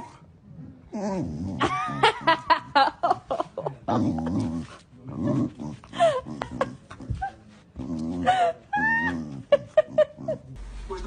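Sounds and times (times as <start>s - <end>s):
dog growling: 0.0s - 2.4s, 3.8s - 6.9s.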